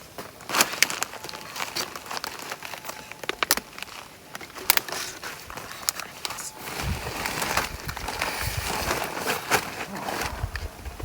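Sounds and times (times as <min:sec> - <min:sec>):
crinkling and rustling: 0:00.0 - 0:11.0.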